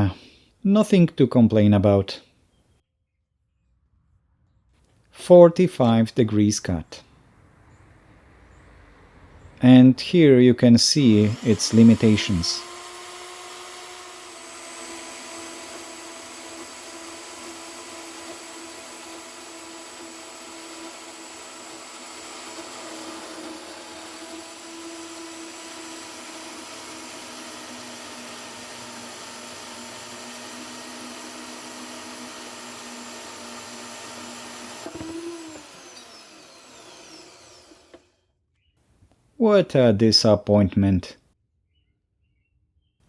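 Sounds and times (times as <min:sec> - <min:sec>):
band saw cutting steel: 0:10.7 - 0:38.1.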